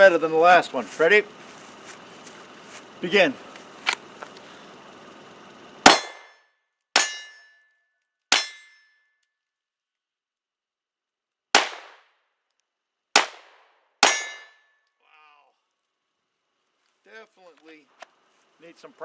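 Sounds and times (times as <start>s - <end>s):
pistol shots: 5.8s - 6.3s, 11.6s - 12.1s, 13.2s - 14.5s
short metallic ring: 6.0s - 9.2s, 14.0s - 14.8s.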